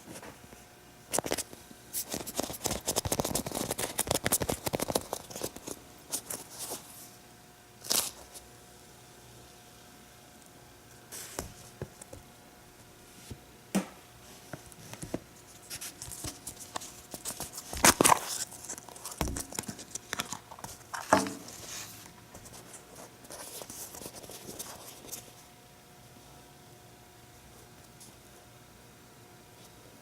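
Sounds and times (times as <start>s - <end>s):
plastic crinkling: 1.1s - 6.9s, 7.8s - 8.4s, 15.5s - 25.3s.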